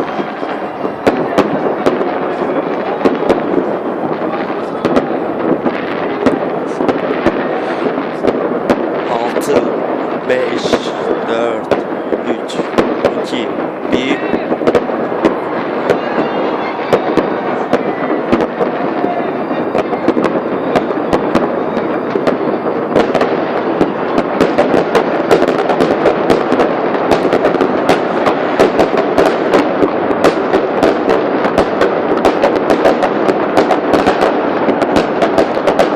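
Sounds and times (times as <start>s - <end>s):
fireworks bangs and crackling: 0.0s - 35.9s.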